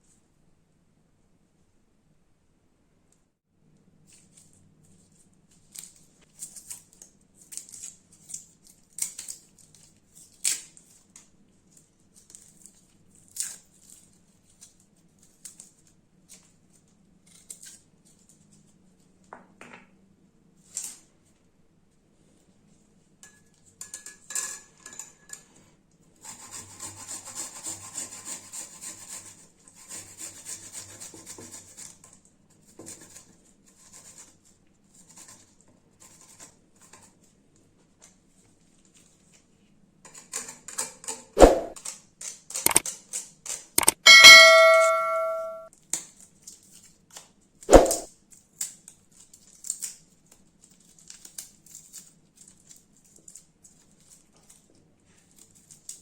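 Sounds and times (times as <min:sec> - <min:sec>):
utensil ringing ding on vessel: 0:43.8 - 0:45.6.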